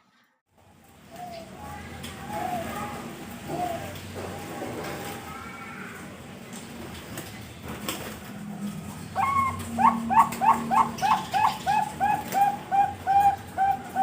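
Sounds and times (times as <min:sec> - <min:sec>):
dove cooing: 0:01.1 - 0:05.2, 0:08.8 - 0:14.0.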